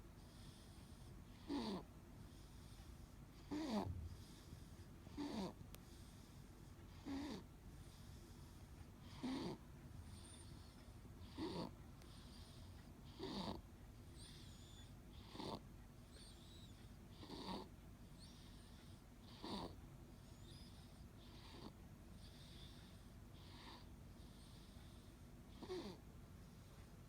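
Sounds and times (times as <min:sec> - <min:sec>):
baby snoring: 0:00.4 - 0:01.9, 0:03.4 - 0:05.6, 0:06.9 - 0:07.5, 0:09.0 - 0:09.6, 0:10.2 - 0:13.6, 0:14.2 - 0:15.6, 0:17.1 - 0:19.8, 0:20.5 - 0:26.0.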